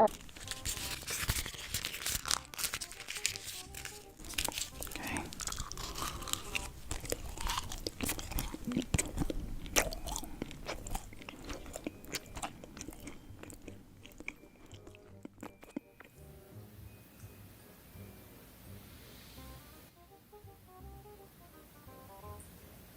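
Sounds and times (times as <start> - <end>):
crunchy chewing and biting: 0.0 - 16.2
soft background music: 0.0 - 22.9.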